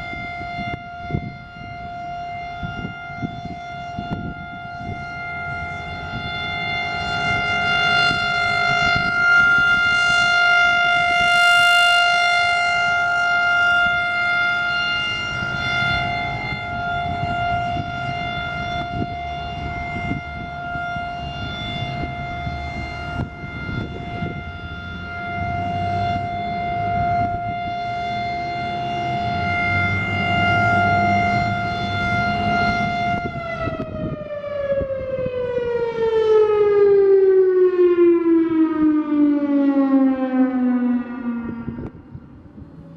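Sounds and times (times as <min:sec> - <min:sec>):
outdoor warning siren: 0:00.0 - 0:42.9.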